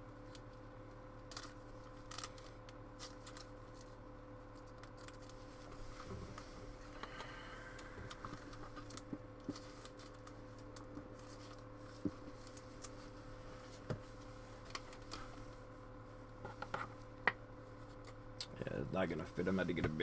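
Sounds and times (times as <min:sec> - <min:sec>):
steady low hum: 0:00.0 - 0:20.0
trading cards rustling and clicking: 0:01.3 - 0:13.1.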